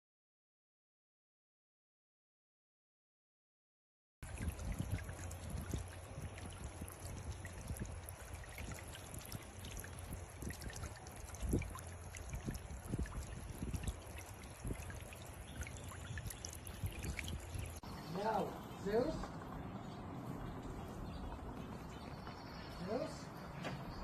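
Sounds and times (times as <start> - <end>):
fountain water splashing: 4.2 - 19.2.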